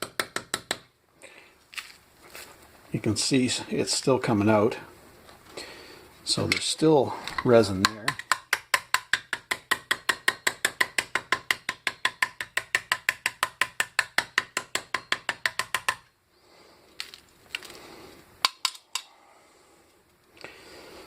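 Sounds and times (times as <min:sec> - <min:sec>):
hammer tapping on hollow metal: 0:00.0 - 0:00.9, 0:07.8 - 0:16.1, 0:18.4 - 0:19.1.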